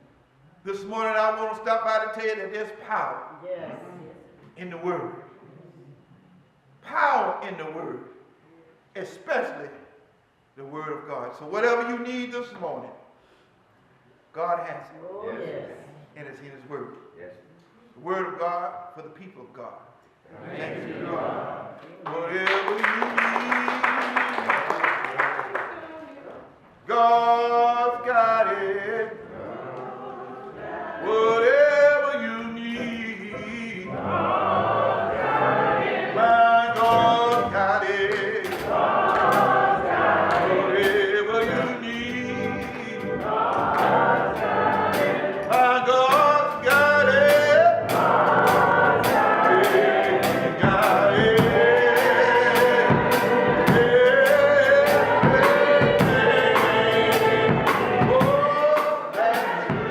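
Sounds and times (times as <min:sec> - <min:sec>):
gospel choir singing: 0:20.2 - 0:25.7, 0:26.9 - 0:59.9
steady percussive beat: 0:36.8 - 0:59.9.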